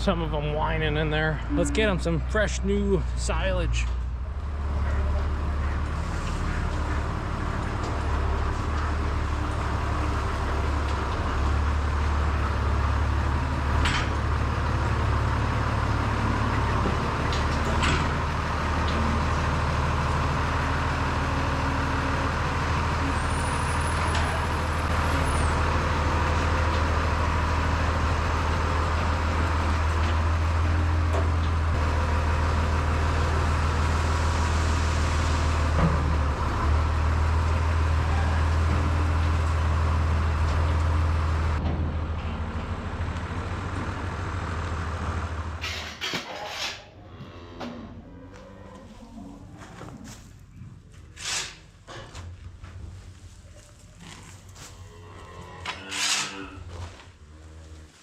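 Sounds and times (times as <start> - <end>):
tractor engine running: 0.0 - 46.0.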